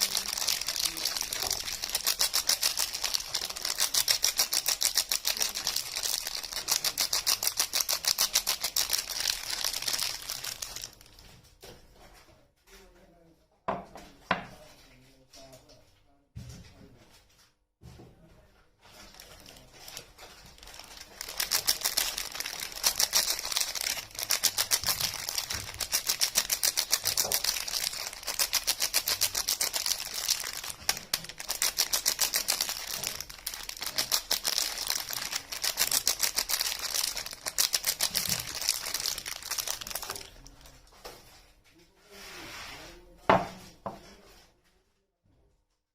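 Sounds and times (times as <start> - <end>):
wrapper crackling and crinkling: 0.0 - 11.2, 18.9 - 40.9.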